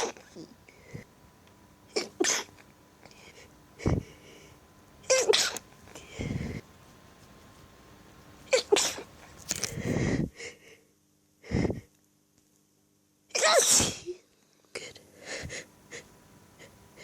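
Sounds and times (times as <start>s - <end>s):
person sneezing: 0.0s - 0.5s, 1.9s - 2.6s, 5.1s - 5.6s, 8.5s - 9.1s, 13.3s - 14.2s
person breathing: 0.7s - 1.1s, 3.0s - 4.6s, 5.9s - 6.7s, 9.6s - 12.0s, 14.5s - 17.0s.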